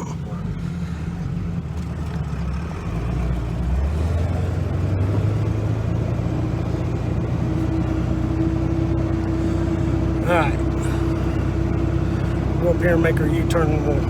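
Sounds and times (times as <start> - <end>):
diesel engine running under load: 0.0 - 14.0
steady higher hum: 6.3 - 14.0.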